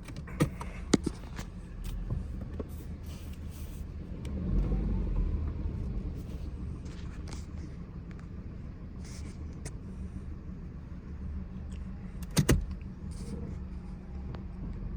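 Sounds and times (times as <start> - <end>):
car engine revving: 4.0 - 7.4.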